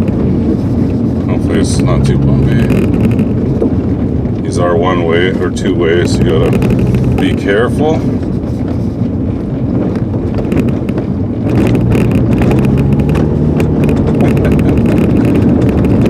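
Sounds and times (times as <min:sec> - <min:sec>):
car engine running: 0:00.0 - 0:16.0
tyre and road noise: 0:00.0 - 0:16.0
sharp knocks and rattles: 0:02.4 - 0:04.4, 0:06.1 - 0:16.0.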